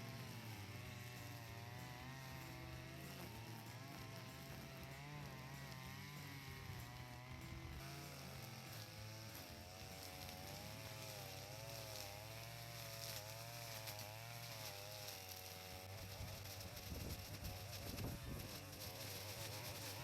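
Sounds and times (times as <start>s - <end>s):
brush cutter engine running: 0.0s - 20.0s.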